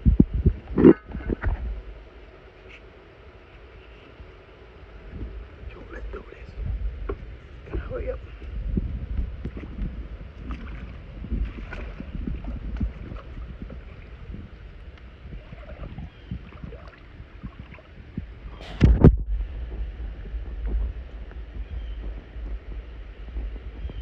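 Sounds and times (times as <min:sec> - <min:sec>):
wind on microphone: 0:00.0 - 0:24.0
pool water sloshing: 0:09.5 - 0:21.5.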